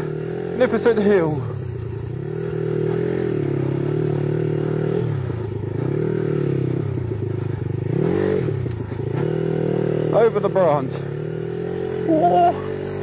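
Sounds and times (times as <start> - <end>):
dirt bike engine revving: 0.0 - 13.0.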